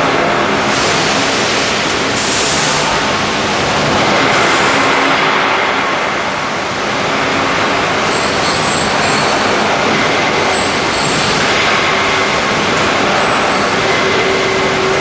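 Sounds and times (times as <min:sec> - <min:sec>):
industrial machine noise: 0:00.0 - 0:15.0
faint high whine: 0:08.0 - 0:15.0.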